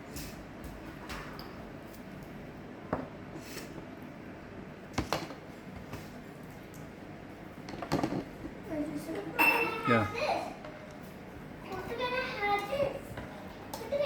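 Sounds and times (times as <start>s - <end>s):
low background hum: 0.0s - 14.0s
metal kitchenware clinking: 9.4s - 10.0s.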